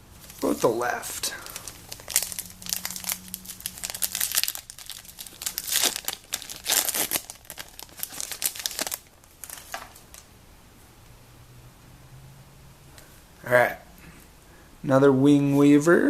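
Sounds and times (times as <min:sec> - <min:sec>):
foil pack tearing and crinkling: 0:00.2 - 0:10.2.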